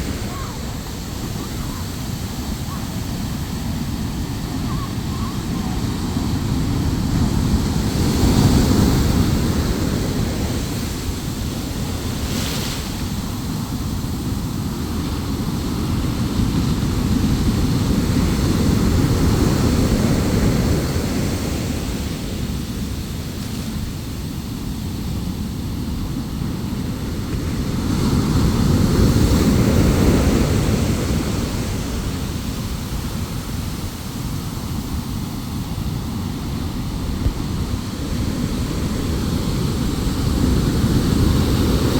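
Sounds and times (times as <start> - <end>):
ocean waves breaking: 0.0 - 41.9.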